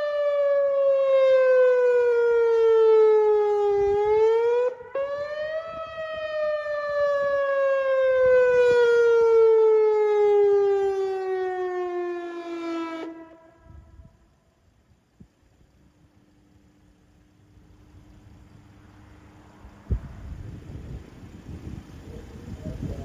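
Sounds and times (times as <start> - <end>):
warning siren wailing: 0.0 - 14.2.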